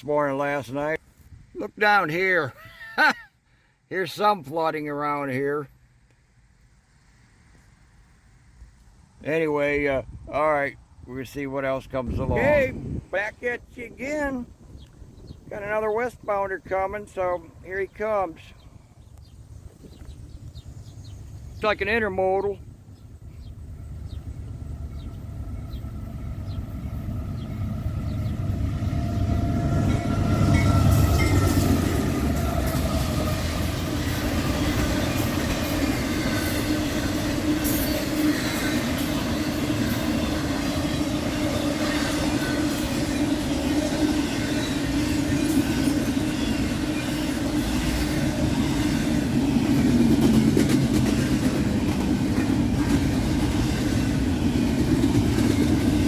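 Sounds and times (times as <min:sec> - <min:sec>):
freight train rumbling past: 0:03.8 - 0:56.0
wheels clicking on rail joints: 0:22.8 - 0:56.0.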